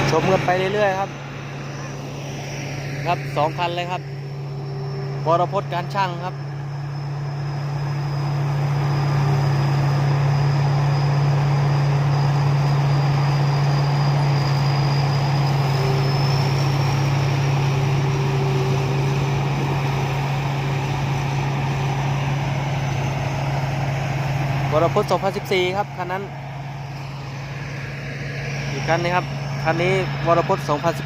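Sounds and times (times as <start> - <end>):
diesel engine running: 0.0 - 31.0
thin high whine: 0.0 - 31.0.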